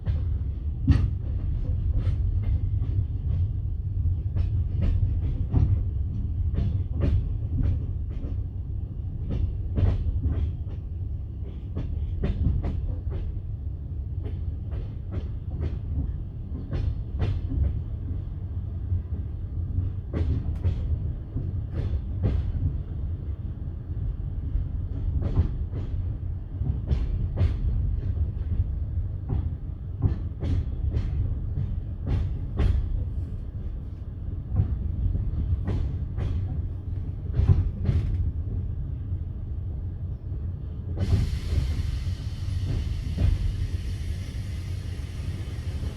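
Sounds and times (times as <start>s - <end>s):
train rumbling: 0.0s - 45.9s
train wheels clacking over rail joints: 29.3s - 38.4s.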